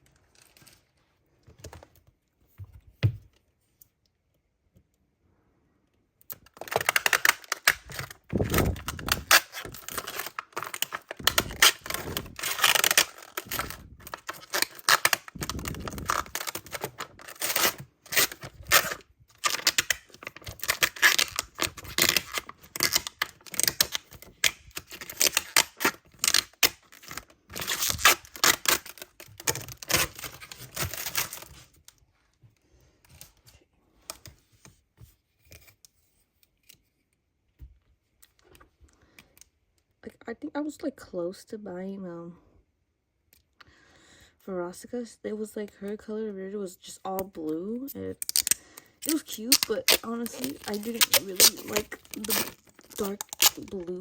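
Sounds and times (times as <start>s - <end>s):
plastic packaging crinkling: 6.3s - 31.9s, 48.2s - 54.0s.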